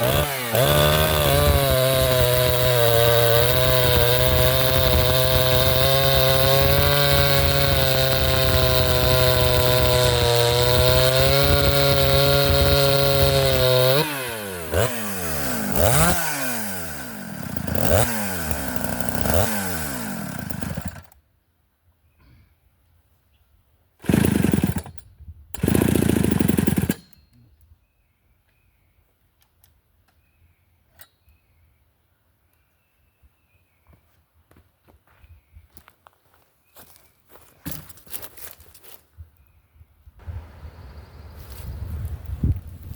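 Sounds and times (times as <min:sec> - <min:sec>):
chainsaw revving: 0:00.0 - 0:21.2, 0:24.0 - 0:25.0, 0:25.6 - 0:27.2.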